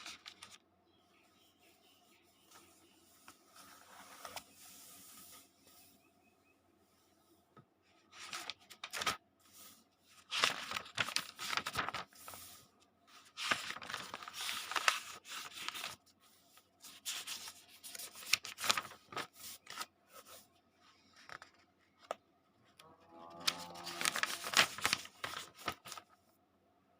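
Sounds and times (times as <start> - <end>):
paper pages turning: 0.0 - 0.6, 2.5 - 5.8, 8.0 - 22.2, 23.3 - 26.2.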